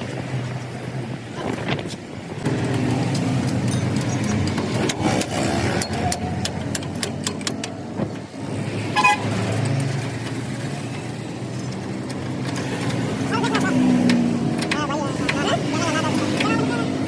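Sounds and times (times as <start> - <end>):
road traffic: 0.0 - 17.0
sharp metallic clinks: 3.4 - 4.6.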